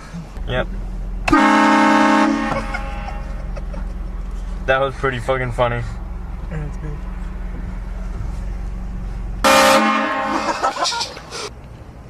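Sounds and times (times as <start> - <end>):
low vehicle rumble: 0.0 - 12.0
air train horn blasting: 1.3 - 3.2, 9.4 - 10.4.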